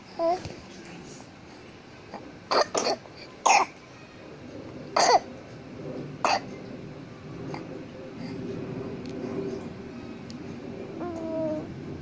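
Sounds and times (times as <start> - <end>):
child coughing: 2.5 - 3.8, 5.0 - 5.3, 6.2 - 6.6.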